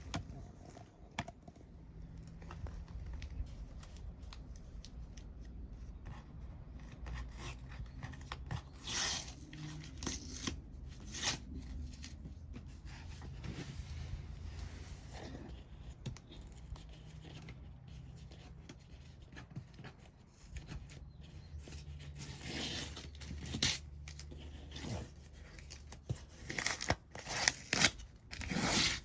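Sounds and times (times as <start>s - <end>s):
cardboard tearing: 22.2s - 29.0s.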